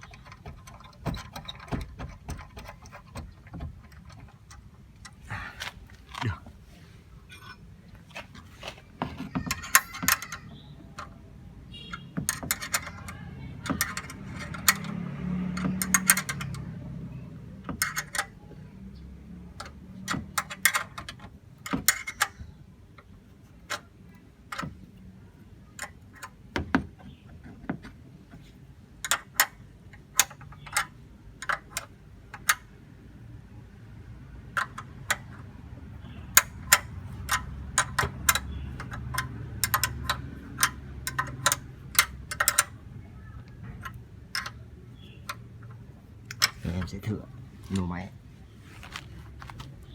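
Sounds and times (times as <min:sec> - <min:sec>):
sharp clicks of parts: 0:08.2 - 0:11.2, 0:11.9 - 0:16.8, 0:17.7 - 0:18.4, 0:19.5 - 0:27.1, 0:29.0 - 0:32.9, 0:34.4 - 0:48.0.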